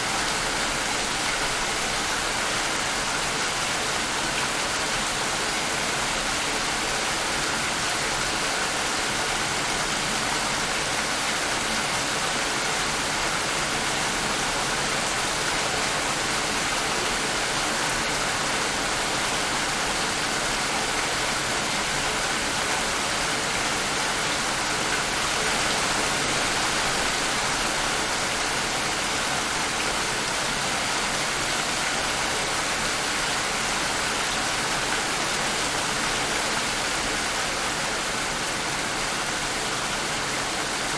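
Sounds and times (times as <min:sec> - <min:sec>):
heavy rain: 0:00.0 - 0:40.9.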